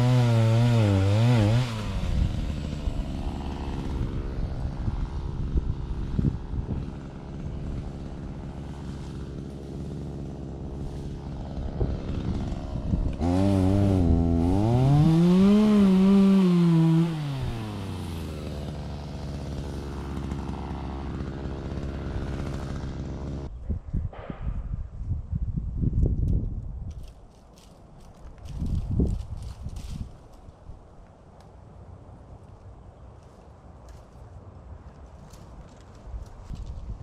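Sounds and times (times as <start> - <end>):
chainsaw idling and revving: 0.0 - 23.5.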